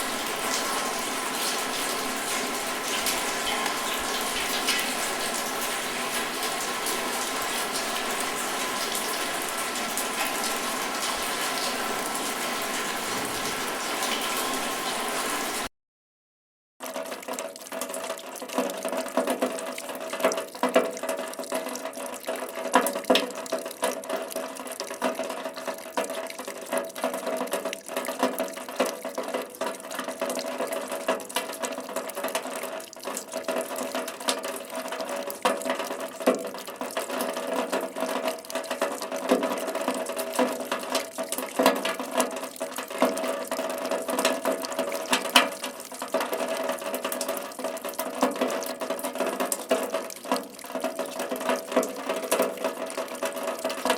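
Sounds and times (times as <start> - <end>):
rain falling: 0.0 - 15.7.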